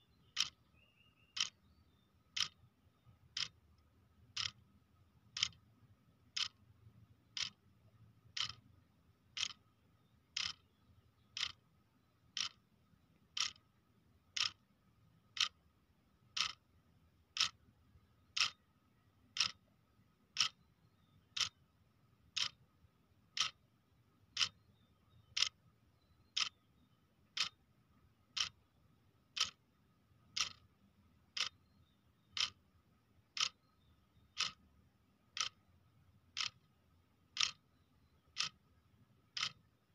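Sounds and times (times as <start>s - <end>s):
clock ticking: 0.2s - 0.7s, 1.4s - 1.6s, 2.2s - 5.6s, 6.2s - 7.6s, 8.2s - 8.7s, 9.3s - 9.7s, 10.3s - 10.7s, 11.4s - 11.7s, 12.3s - 13.7s, 14.3s - 14.6s, 15.2s - 15.7s, 16.3s - 16.7s, 17.3s - 17.6s, 18.3s - 18.6s, 19.3s - 19.6s, 20.3s - 20.6s, 21.4s - 21.6s, 22.3s - 22.7s, 23.4s - 23.6s, 24.3s - 24.6s, 25.3s - 25.6s, 26.3s - 26.6s, 27.2s - 27.6s, 28.3s - 28.6s, 29.3s - 29.6s, 30.3s - 31.7s, 32.4s - 32.7s, 33.3s - 33.7s, 34.3s - 35.7s, 36.3s - 36.8s, 37.4s - 39.9s.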